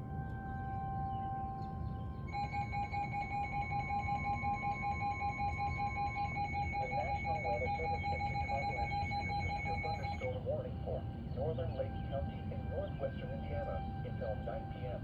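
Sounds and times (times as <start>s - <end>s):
rapid pulsing alarm beep: 0.0s - 15.0s
steady warning tone: 0.0s - 15.0s.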